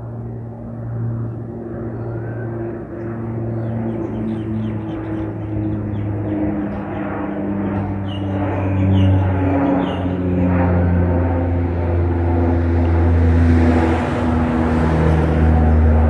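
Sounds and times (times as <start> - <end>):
propeller plane drone: 0.0 - 16.0.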